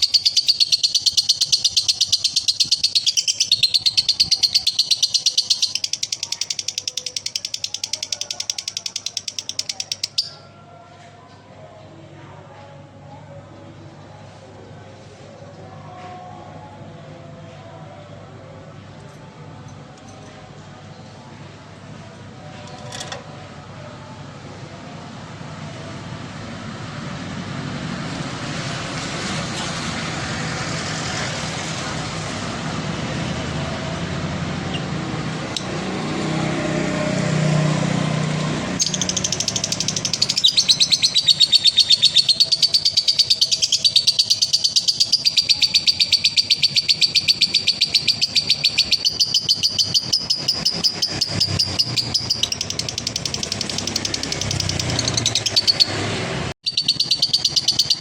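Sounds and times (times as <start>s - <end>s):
lovebird chattering trill: 0.0s - 10.4s, 38.8s - 56.0s, 56.6s - 58.0s.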